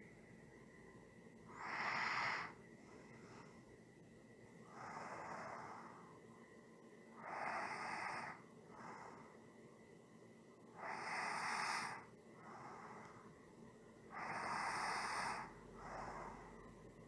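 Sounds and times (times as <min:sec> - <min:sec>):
person breathing slowly: 0:01.5 - 0:03.8, 0:04.6 - 0:06.3, 0:07.1 - 0:09.6, 0:10.8 - 0:13.5, 0:14.1 - 0:17.0.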